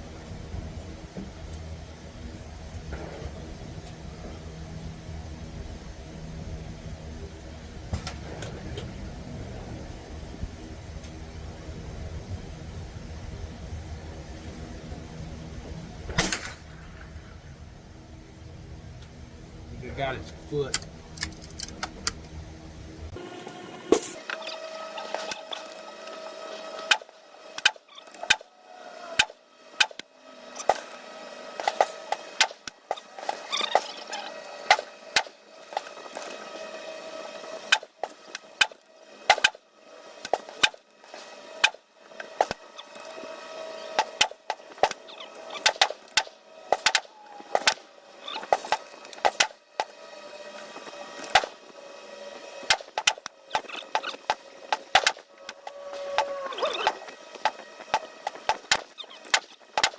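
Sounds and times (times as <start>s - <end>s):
faint hum: 0.0s - 59.9s
gunshot cracks: 16.1s - 16.7s.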